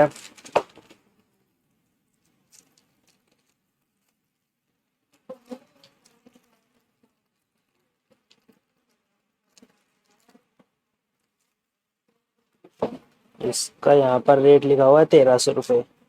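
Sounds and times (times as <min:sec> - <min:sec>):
light clicks and rustles: 0:02.1 - 0:04.2.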